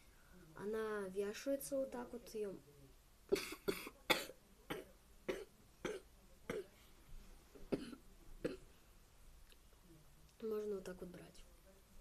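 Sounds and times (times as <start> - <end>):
girl coughing: 3.3 - 6.7, 7.7 - 8.6.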